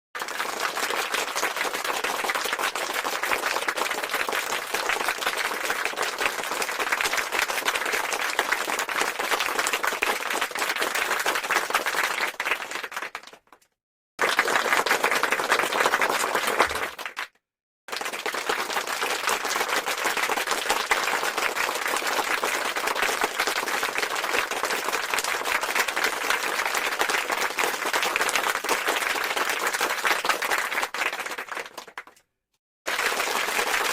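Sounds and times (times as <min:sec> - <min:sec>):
crowd applause: 0:00.2 - 0:13.3, 0:14.2 - 0:17.3, 0:17.9 - 0:32.1, 0:32.9 - 0:33.9.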